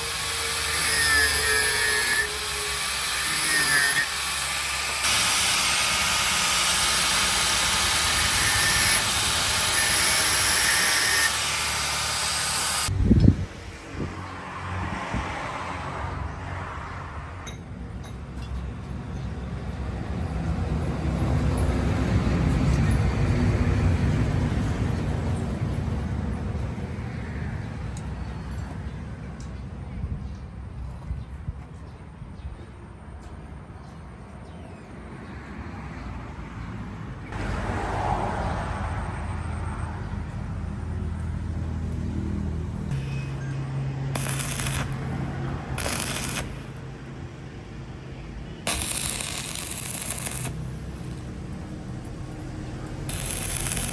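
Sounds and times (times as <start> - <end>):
motor humming: 0.0 - 12.9.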